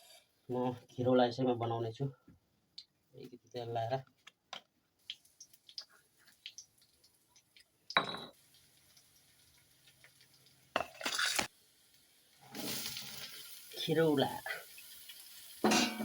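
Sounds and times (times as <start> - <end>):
kitchen utensils clinking: 8.0 - 8.4, 15.6 - 16.0
pot clanking: 8.0 - 8.4, 15.6 - 16.0.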